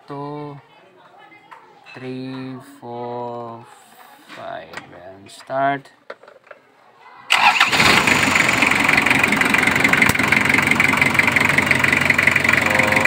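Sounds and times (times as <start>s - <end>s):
diesel engine starting and idling: 7.3s - 13.0s.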